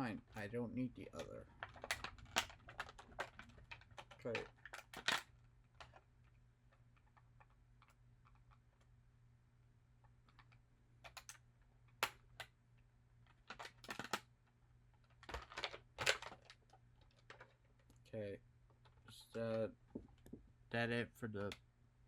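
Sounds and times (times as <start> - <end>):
plastic packaging clicking and crackling: 1.1 - 6.1, 13.2 - 14.3, 15.0 - 18.0.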